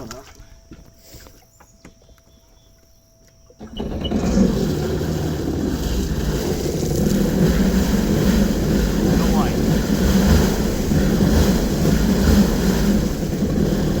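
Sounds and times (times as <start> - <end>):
watercraft engine starting and running: 3.5 - 14.0.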